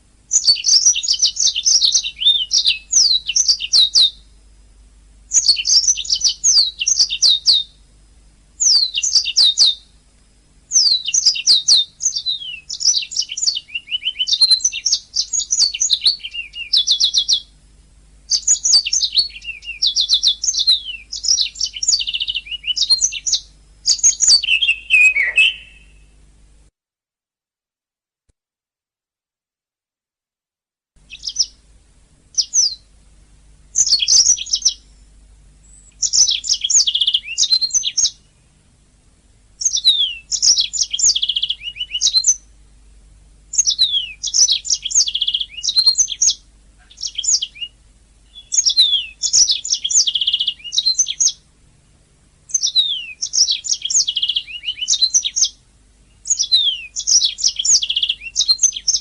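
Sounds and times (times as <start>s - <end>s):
faint steady low hum: 0.0s - 26.7s, 31.0s - 59.0s
canary singing trills and whistles: 0.3s - 4.3s, 5.3s - 7.8s, 8.6s - 9.9s, 10.7s - 17.6s, 18.3s - 26.1s, 31.0s - 31.6s, 32.3s - 32.9s, 33.7s - 35.0s, 35.6s - 38.4s, 39.6s - 42.5s, 43.5s - 51.4s, 52.5s - 59.0s.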